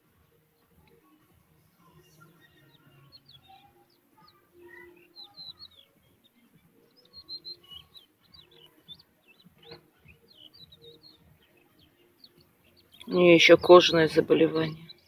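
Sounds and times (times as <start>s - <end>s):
small birds chirping: 0.0s - 15.0s.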